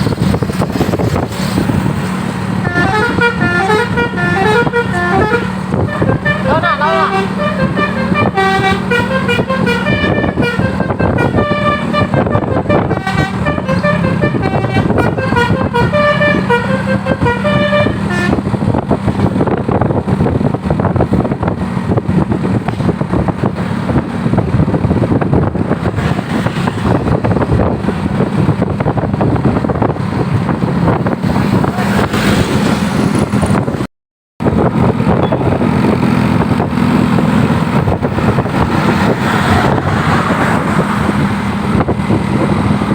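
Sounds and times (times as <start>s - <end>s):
heavy vehicle engine: 0.0s - 42.9s
road noise: 0.0s - 42.9s
multi-tone musical bus horn: 2.6s - 18.7s.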